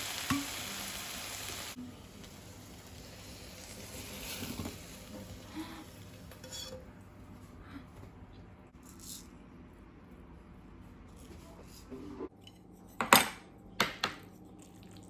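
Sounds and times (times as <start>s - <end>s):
food sizzling in a pan: 0.0s - 6.7s.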